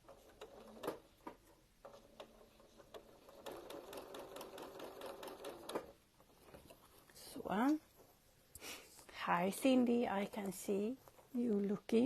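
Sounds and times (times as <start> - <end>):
sewing machine stitching: 0.0 - 6.0.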